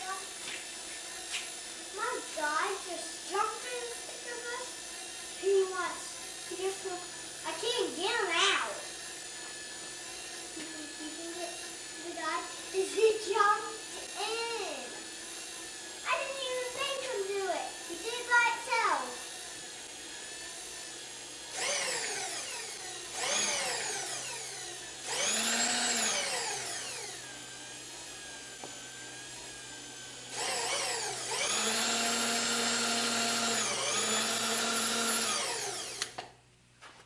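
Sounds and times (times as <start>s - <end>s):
small electric motor whining: 0.0s - 36.3s.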